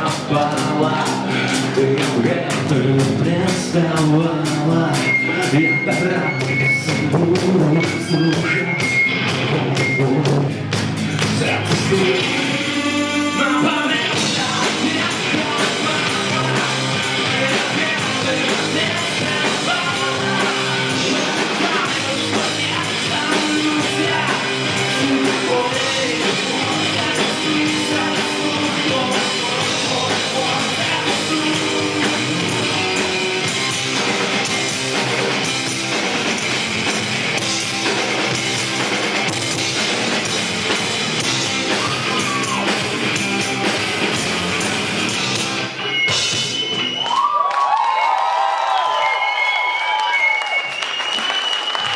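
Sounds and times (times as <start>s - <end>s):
person singing: 0.0s - 8.9s, 11.2s - 33.7s
electric guitar: 0.0s - 47.3s
rock band playing: 0.0s - 51.9s.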